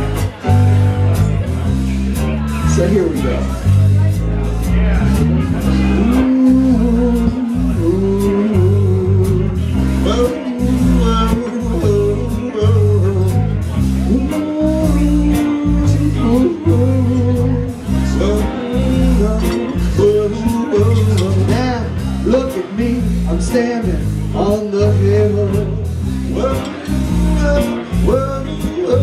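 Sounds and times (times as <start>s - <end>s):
blues band playing: 0.0s - 29.0s
lead guitar bending notes: 0.0s - 29.0s.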